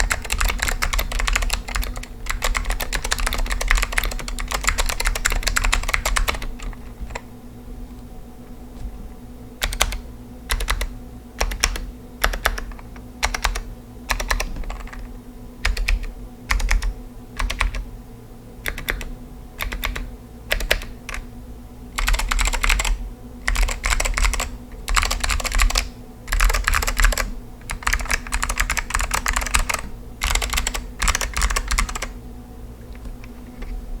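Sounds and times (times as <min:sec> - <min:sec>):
clicky keyboard typing: 0:00.0 - 0:07.3, 0:09.6 - 0:17.8, 0:18.7 - 0:21.2, 0:22.0 - 0:32.1.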